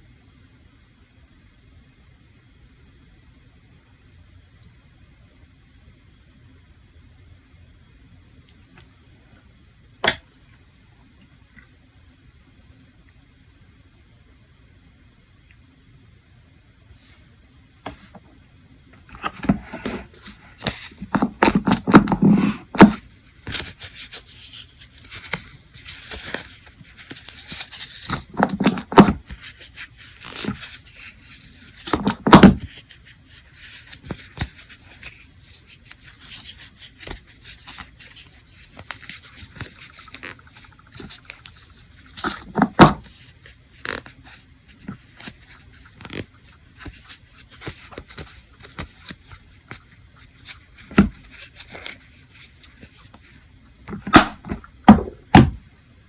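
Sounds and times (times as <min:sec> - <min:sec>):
scraping and rubbing: 0:19.1 - 0:55.5.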